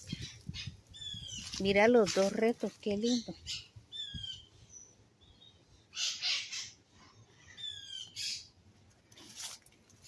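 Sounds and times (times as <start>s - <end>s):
harsh scratchy bird calls: 5.9s - 6.8s.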